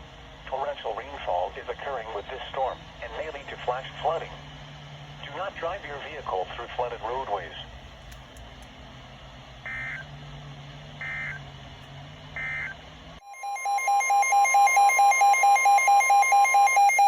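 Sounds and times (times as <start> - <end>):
alert tone with pulsing beep: 12.4 - 17.0.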